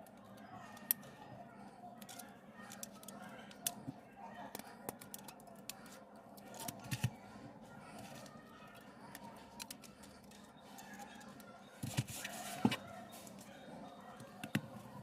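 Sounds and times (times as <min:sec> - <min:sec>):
hand tools clicking and tapping: 0:02.0 - 0:07.1.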